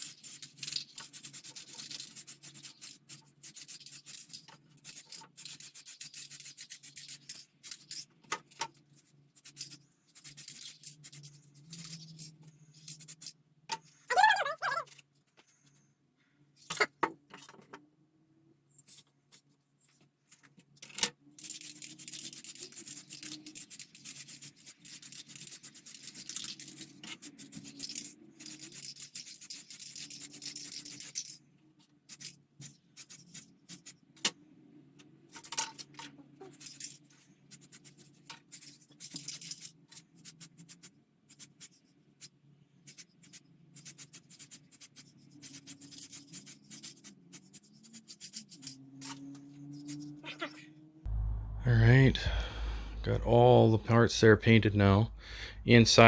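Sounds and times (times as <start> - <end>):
plastic model parts handled: 0.0 - 14.1.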